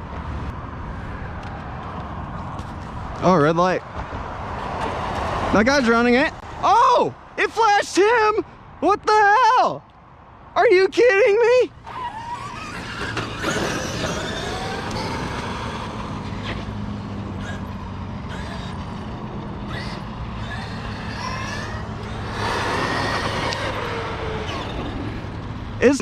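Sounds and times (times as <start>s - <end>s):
motor vehicles passing: 0.0s - 8.8s, 9.8s - 26.0s
tyre noise: 11.8s - 25.9s.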